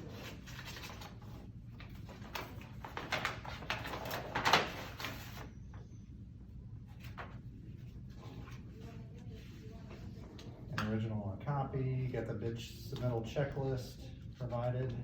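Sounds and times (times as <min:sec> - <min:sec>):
paper rustling and crinkling: 0:00.0 - 0:05.5.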